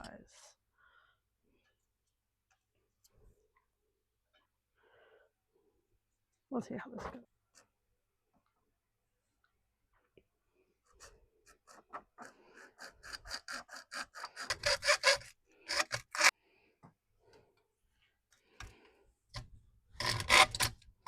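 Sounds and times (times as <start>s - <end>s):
hand saw cutting: 10.9s - 16.3s, 20.0s - 20.7s.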